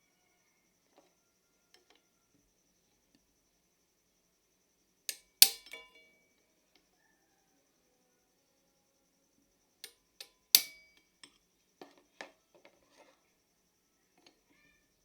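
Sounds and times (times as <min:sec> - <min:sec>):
metal parts clicking and tapping: 0:05.1 - 0:06.1, 0:09.8 - 0:12.8.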